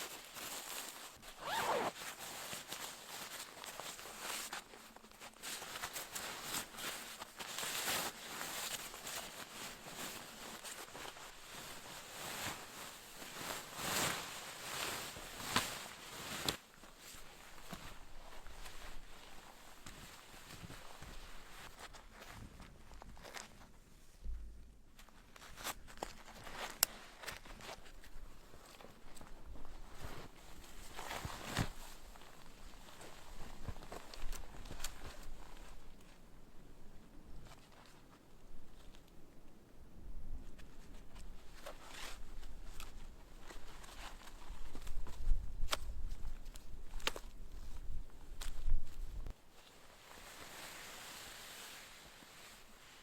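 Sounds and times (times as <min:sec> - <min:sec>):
crunching and rustling in snow: 0:00.0 - 0:23.6, 0:25.5 - 0:36.0, 0:41.4 - 0:53.0.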